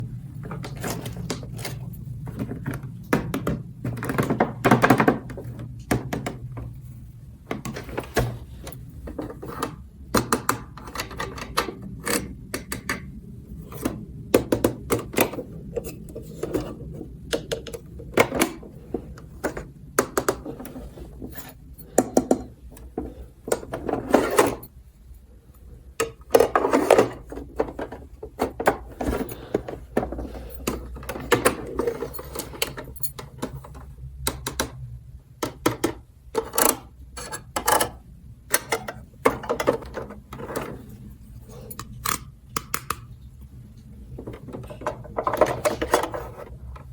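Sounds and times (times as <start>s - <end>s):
rustling and scraping: 0.0s - 4.6s, 5.2s - 9.9s, 15.4s - 17.3s, 18.0s - 34.0s, 39.3s - 42.0s, 43.4s - 46.9s.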